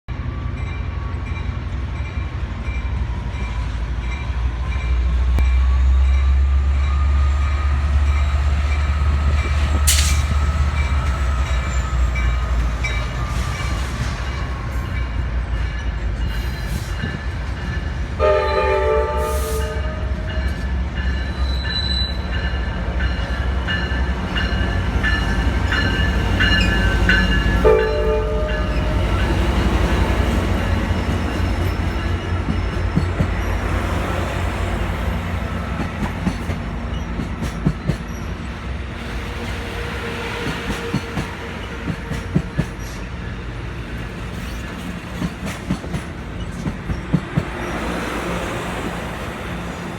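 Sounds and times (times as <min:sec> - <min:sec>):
diesel train rumble: 0:00.1 - 0:49.9
train wheels clicking and squealing: 0:00.4 - 0:18.0, 0:20.3 - 0:49.9
train horn chord: 0:18.2 - 0:20.4, 0:27.5 - 0:28.8.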